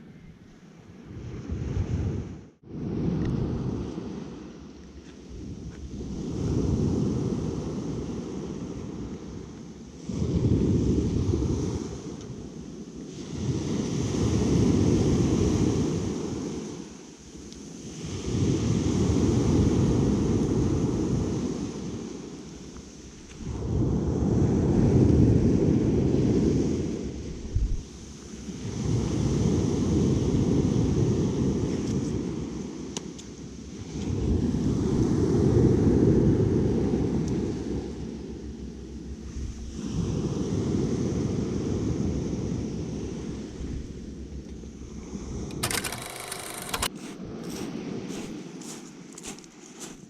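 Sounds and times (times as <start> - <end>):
wind buffeting microphone: 23.3 - 32.9.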